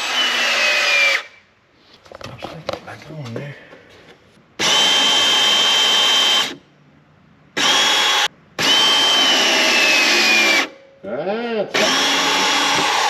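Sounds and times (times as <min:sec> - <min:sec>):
crimping tool motor whining: 0:11.8 - 0:13.0.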